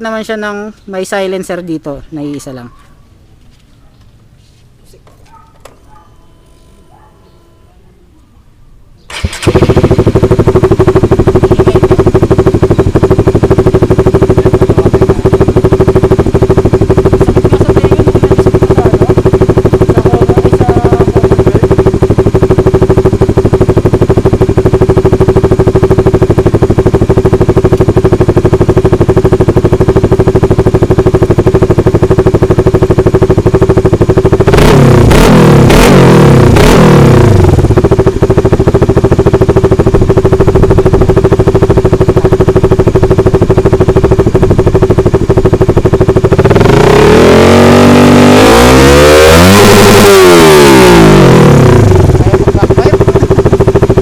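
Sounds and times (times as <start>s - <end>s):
engine starting: 9.1s - 10.1s
engine revving: 9.1s - 54.0s
motorcycle engine idling loudly: 9.1s - 54.0s.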